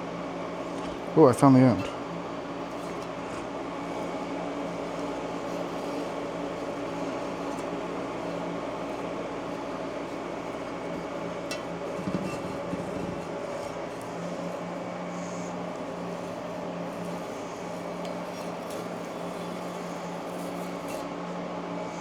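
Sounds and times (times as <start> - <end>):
steady mechanical hum: 0.0 - 22.0.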